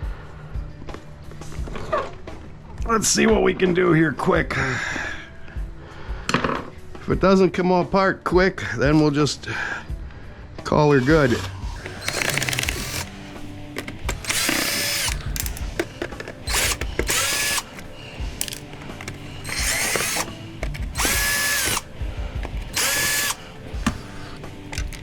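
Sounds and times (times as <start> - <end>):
power drill spinning: 11.8 - 25.0.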